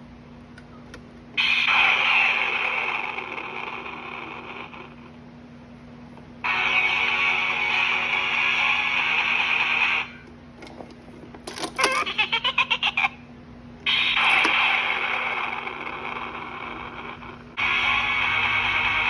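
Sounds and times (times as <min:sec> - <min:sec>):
electronic sound clips from small speaker: 0:11.5 - 0:12.2, 0:13.8 - 0:16.0
pulsing electronic sounds: 0:13.9 - 0:19.0.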